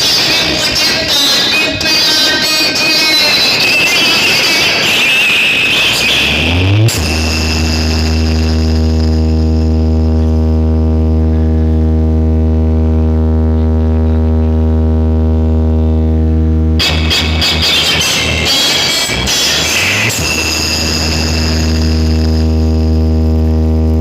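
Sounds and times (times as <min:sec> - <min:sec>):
loud music: 0:00.0 - 0:24.0
low bass hum: 0:06.2 - 0:24.0.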